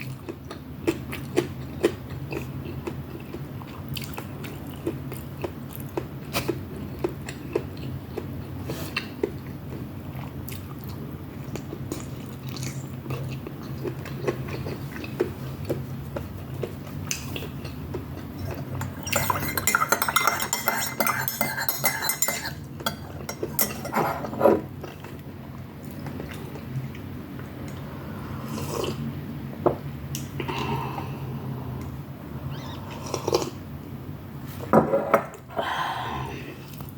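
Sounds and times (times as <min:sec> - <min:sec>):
chewing: 0:00.0 - 0:19.6
cutlery clinking on a plate: 0:18.8 - 0:24.4.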